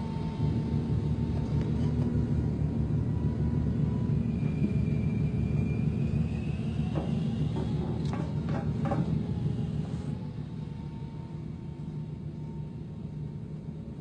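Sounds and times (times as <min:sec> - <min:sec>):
faint steady whine: 0:00.0 - 0:08.5, 0:09.1 - 0:14.0.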